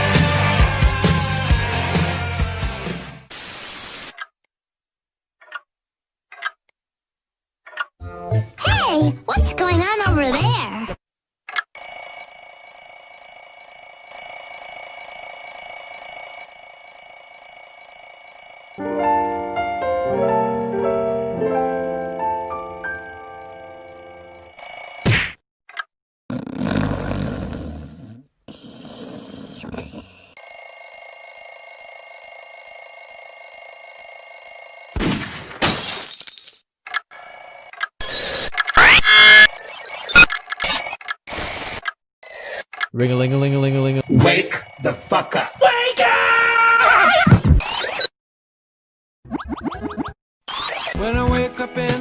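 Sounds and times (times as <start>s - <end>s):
alarm clock bell ringing: 11.8s - 25.0s, 30.4s - 35.0s, 43.0s - 46.0s.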